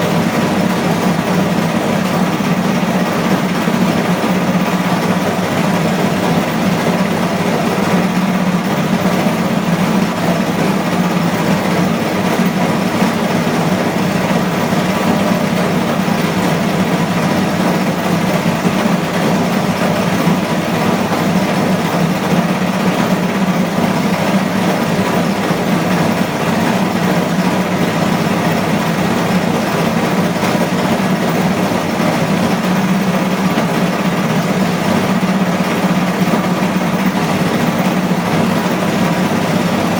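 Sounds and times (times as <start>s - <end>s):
washing machine spinning: 0.0s - 39.9s.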